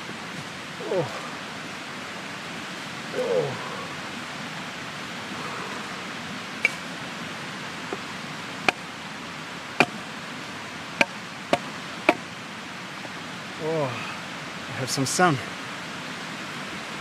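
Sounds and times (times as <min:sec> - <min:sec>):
steady rushing noise: 0:00.0 - 0:17.0
sharp blows on a log: 0:08.6 - 0:08.8, 0:09.8 - 0:10.0, 0:11.0 - 0:12.3.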